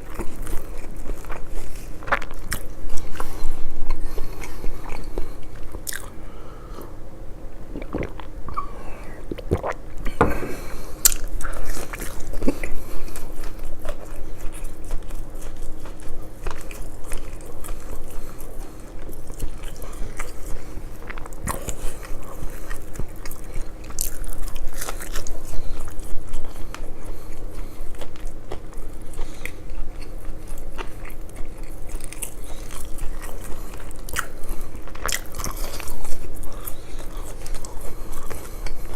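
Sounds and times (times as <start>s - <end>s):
close-miked chewing: 0.0s - 38.9s
wet mouth sounds: 7.6s - 16.6s.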